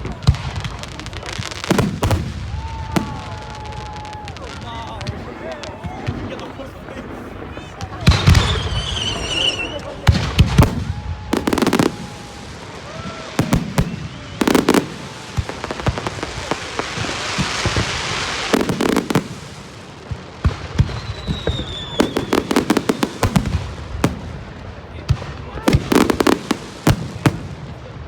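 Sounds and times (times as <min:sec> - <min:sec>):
fireworks banging and crackling: 0:00.0 - 0:28.0
firework rushing hiss: 0:08.1 - 0:20.0
firework whistle sliding down: 0:08.2 - 0:10.0.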